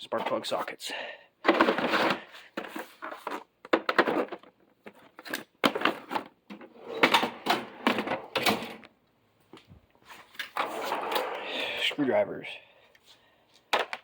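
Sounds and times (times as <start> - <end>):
metal drawers sliding: 6.7 - 8.9, 10.6 - 11.8.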